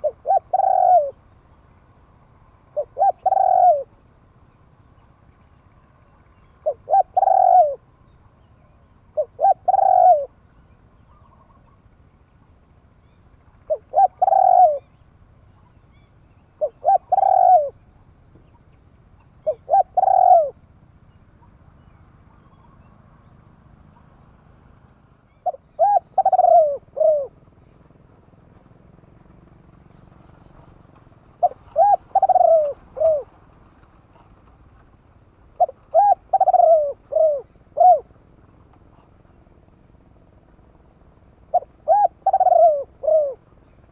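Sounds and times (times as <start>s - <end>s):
dove cooing: 0.0s - 1.2s, 2.7s - 4.0s, 6.6s - 7.9s, 9.1s - 10.4s, 13.6s - 14.9s, 16.6s - 17.9s, 19.4s - 20.6s, 25.3s - 27.5s, 30.9s - 39.4s, 41.4s - 43.9s.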